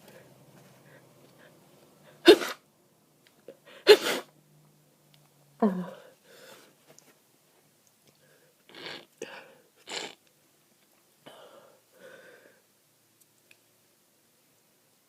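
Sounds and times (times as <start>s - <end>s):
stifled sneezes: 2.1s - 2.6s, 3.7s - 4.3s
person sniffing: 3.6s - 4.3s, 8.7s - 10.2s.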